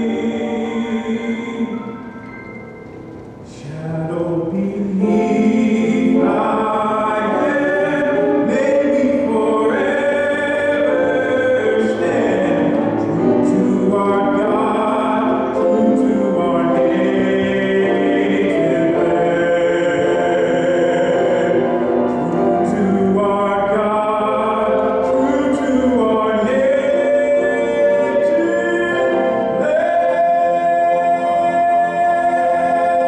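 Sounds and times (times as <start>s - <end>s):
choir singing: 0.0s - 2.8s, 3.6s - 33.0s
musical accompaniment: 0.0s - 33.0s.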